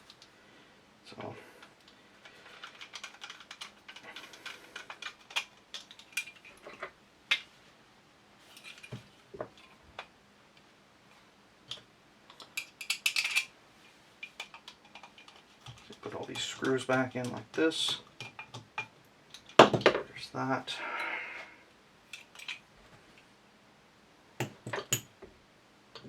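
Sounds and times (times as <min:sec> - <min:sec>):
small steel parts clicking: 0:01.6 - 0:07.4, 0:11.7 - 0:13.5, 0:14.2 - 0:19.6, 0:22.1 - 0:22.6.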